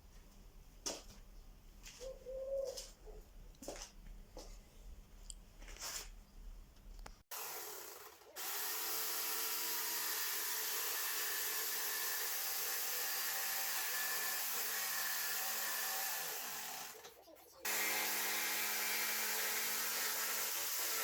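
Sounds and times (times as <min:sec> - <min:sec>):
electric power tool running: 0:07.3 - 0:17.0, 0:17.7 - 0:21.0.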